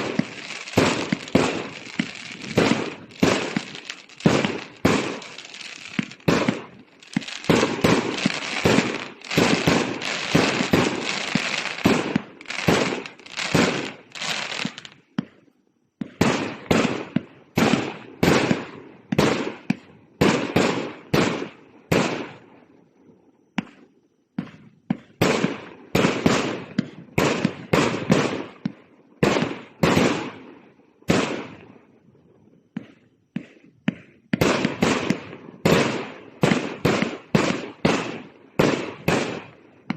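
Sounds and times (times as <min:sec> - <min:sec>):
fireworks bangs: 0:00.0 - 0:15.3, 0:16.0 - 0:22.4, 0:24.4 - 0:30.5, 0:32.7 - 0:39.9
fireworks crackling: 0:00.0 - 0:15.3, 0:33.4 - 0:39.9.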